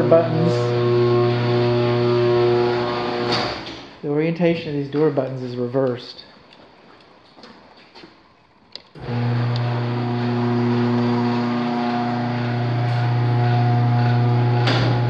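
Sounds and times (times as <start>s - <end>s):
garage door motor humming: 0.0s - 4.0s, 8.9s - 15.0s.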